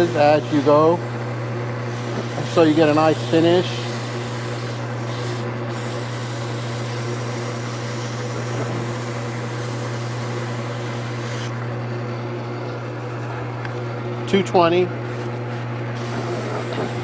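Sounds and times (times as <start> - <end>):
sandpaper hissing on spinning wood: 0.0 - 11.6, 16.0 - 17.0
wood lathe motor humming: 0.0 - 14.3, 14.9 - 17.0.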